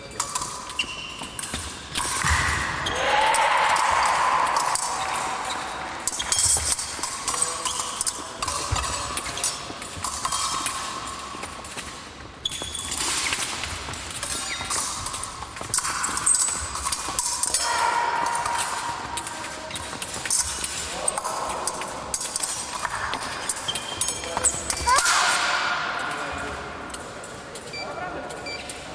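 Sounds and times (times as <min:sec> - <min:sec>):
hum of large hall: 0:00.0 - 0:28.9
fencing blades clicking: 0:00.1 - 0:02.3, 0:04.6 - 0:25.5.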